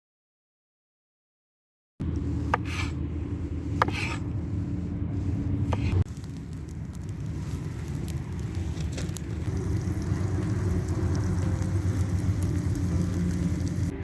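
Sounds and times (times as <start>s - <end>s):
low fire rumble: 2.0s - 14.0s
campfire crackling: 6.0s - 14.0s.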